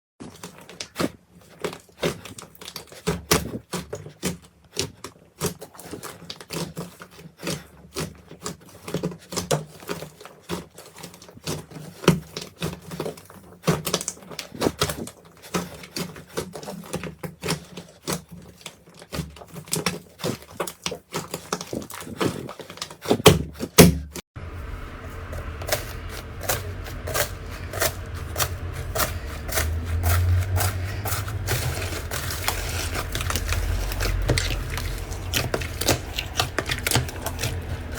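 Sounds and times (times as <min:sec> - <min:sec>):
steady low hum: 0:24.4 - 0:37.9.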